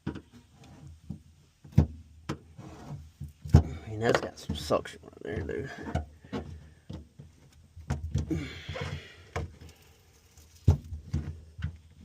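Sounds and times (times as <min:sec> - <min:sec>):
knocks and clunks: 0:00.0 - 0:09.7
rough scrape: 0:02.6 - 0:03.1.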